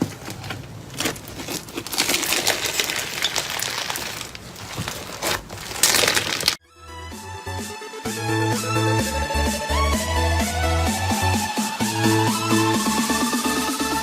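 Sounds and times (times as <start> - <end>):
crunchy material crackling: 0.0 - 6.6.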